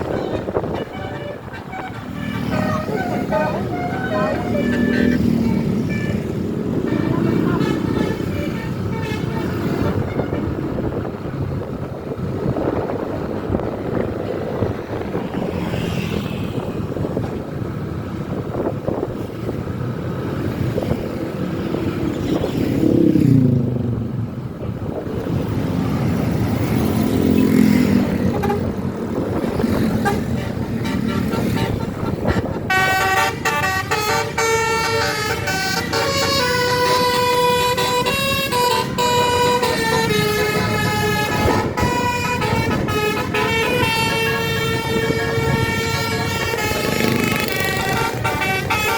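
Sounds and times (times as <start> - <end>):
bus horn playing melody: 0.0 - 10.7, 28.2 - 28.8, 29.9 - 48.9
road traffic: 0.0 - 48.9
vehicle passing loudly: 1.4 - 48.9.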